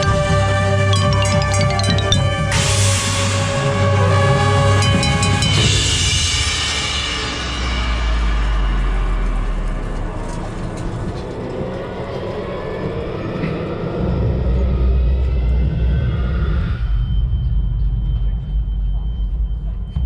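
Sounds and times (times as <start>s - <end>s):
drum corps music: 0.0s - 2.9s, 4.6s - 6.4s.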